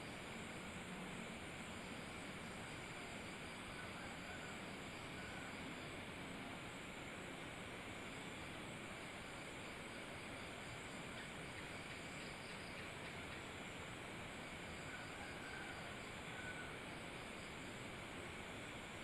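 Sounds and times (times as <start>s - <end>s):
faint background hiss: 0.0s - 19.0s.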